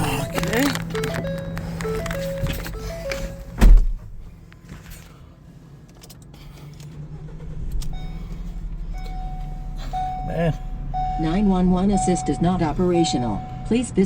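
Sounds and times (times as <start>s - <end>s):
vehicle door shutting: 0.0s - 5.0s
low engine hum: 0.0s - 14.0s.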